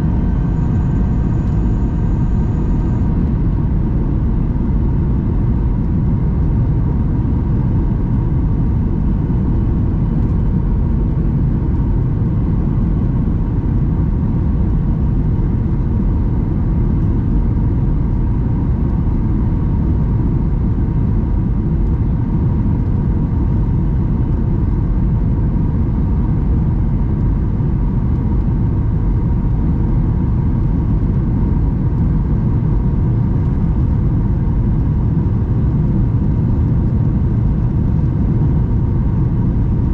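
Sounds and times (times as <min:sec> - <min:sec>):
faint steady hum: 0:00.0 - 0:39.9
jet engine rumble in cabin: 0:00.0 - 0:39.9.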